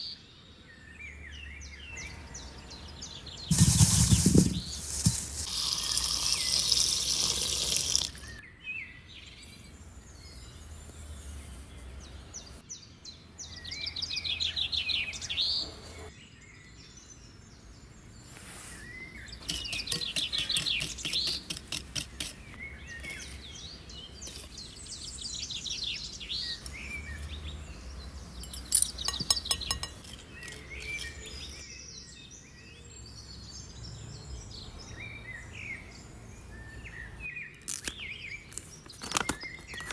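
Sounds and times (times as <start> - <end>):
loud hiss: 3.5 - 8.2
songbirds trilling: 16.7 - 39.9.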